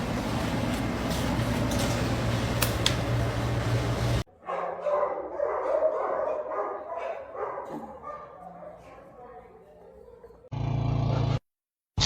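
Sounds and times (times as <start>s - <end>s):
dog barking and yipping: 4.4s - 10.4s.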